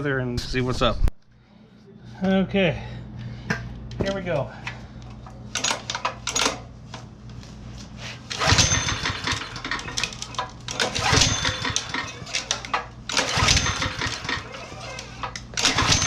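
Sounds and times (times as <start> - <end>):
engine cranking by recoil rope: 8.3 - 16.0.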